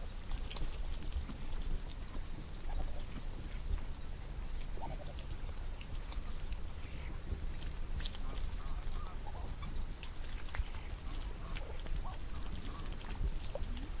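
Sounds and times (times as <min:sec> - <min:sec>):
ducks dabbling in mud: 0:00.0 - 0:14.0
soft low duck calls: 0:08.0 - 0:14.0.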